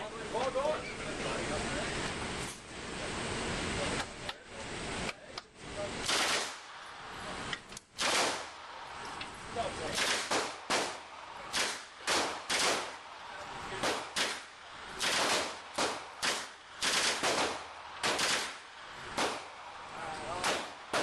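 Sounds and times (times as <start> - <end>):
gunshots: 6.0 - 6.8, 8.0 - 8.7, 9.8 - 19.7, 20.3 - 21.0.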